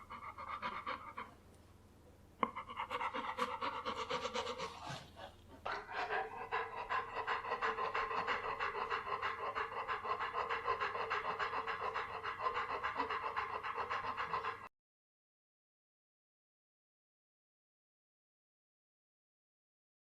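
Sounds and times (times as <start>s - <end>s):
dog panting: 0.0s - 1.4s, 2.4s - 14.7s.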